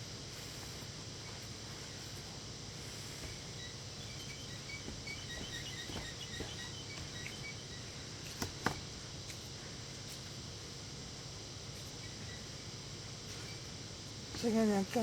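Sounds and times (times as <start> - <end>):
steady background hiss: 0.0 - 15.0.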